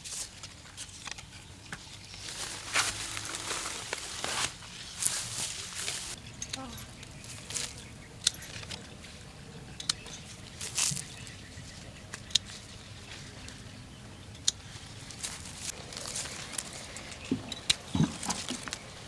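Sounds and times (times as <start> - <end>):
leaves rustling: 0.0 - 9.4, 10.2 - 19.0
branches snapping: 2.2 - 8.8, 14.5 - 19.0.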